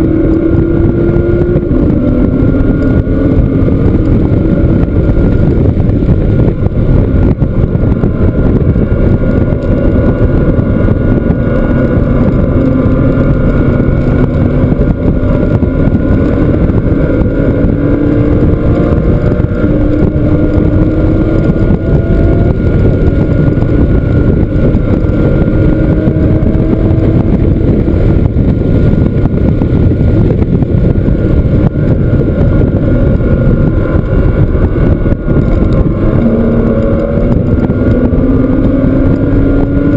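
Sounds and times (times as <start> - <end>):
car engine accelerating hard: 0.0 - 39.9
wind and road noise: 0.0 - 39.9.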